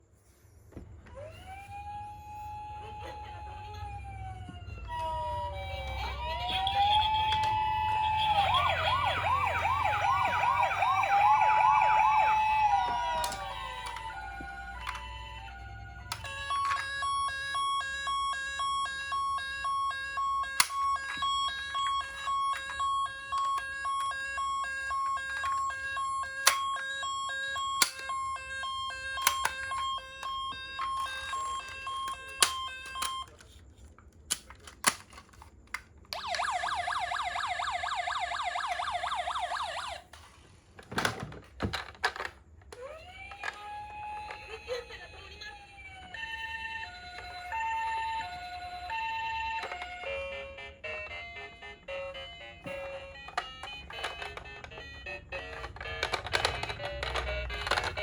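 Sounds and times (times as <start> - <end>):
toy siren pulsing beeps: 1.2 - 33.5, 36.1 - 40.2, 42.7 - 58.0
fast-warbling siren tone: 3.9 - 15.9.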